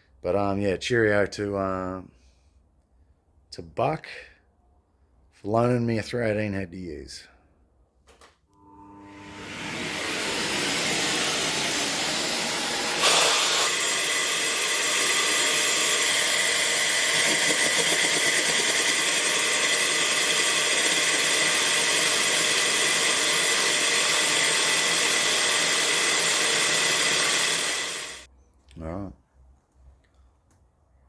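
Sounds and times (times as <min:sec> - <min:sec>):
electric drill running: 0:08.6 - 0:28.3.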